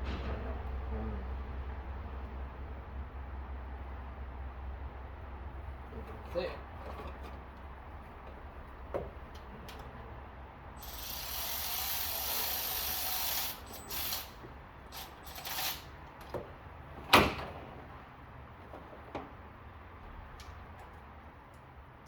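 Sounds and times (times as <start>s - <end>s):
hand tools scraping and rattling: 6.0s - 7.6s.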